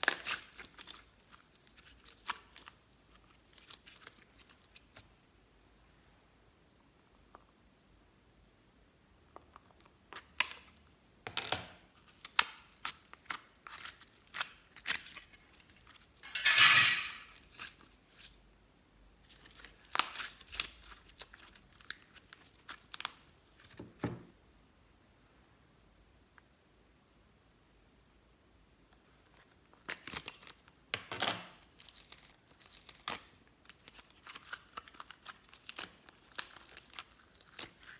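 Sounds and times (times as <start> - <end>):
crinkling rustle: 0.0 - 5.1, 12.0 - 18.4, 19.2 - 24.0, 31.6 - 37.9.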